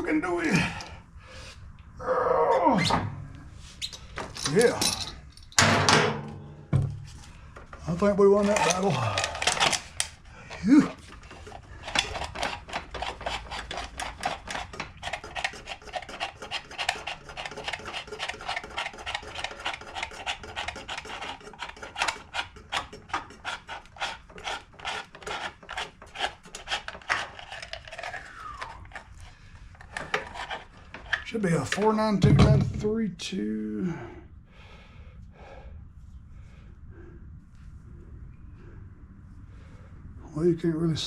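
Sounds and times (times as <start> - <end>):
oil filter rubbing and scraping: 3.2 - 4.7, 6.9 - 31.9.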